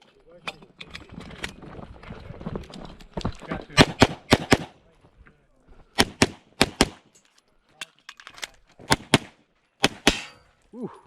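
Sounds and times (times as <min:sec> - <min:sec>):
pistol shots in quick pairs: 0:03.8 - 0:04.8, 0:06.0 - 0:07.0, 0:08.9 - 0:10.4.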